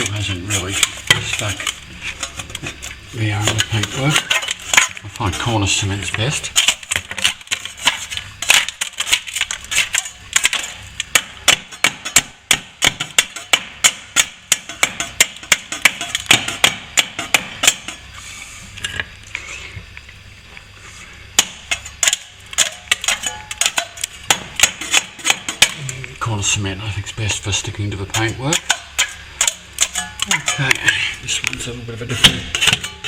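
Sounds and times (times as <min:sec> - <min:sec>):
hand tool chipping plaster: 0:00.0 - 0:18.0, 0:21.4 - 0:25.9, 0:28.1 - 0:30.8, 0:32.1 - 0:33.0.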